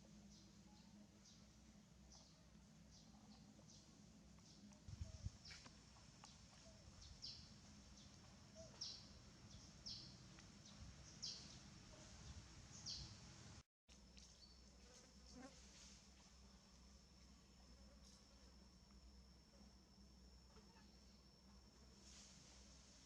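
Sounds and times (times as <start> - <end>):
high insect drone: 14.2 - 23.0.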